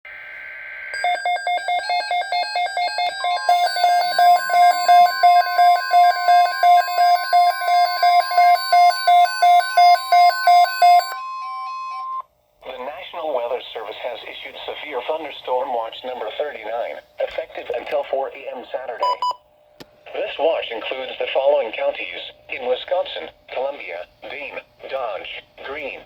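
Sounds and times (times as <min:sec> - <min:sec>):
digital data tones: 0:01.0 - 0:12.2
electronic alarm beeps: 0:01.0 - 0:12.3, 0:19.0 - 0:19.4.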